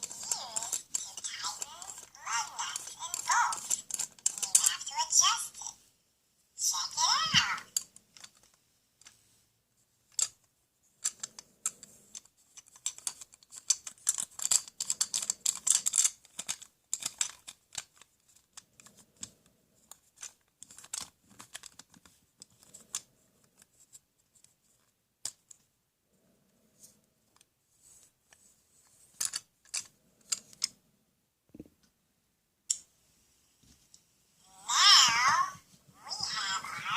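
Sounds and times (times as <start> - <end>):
plastic toy tools clicking and rattling: 0.0 - 5.5, 7.1 - 9.2, 10.1 - 25.7, 28.3 - 30.7, 34.7 - 36.9.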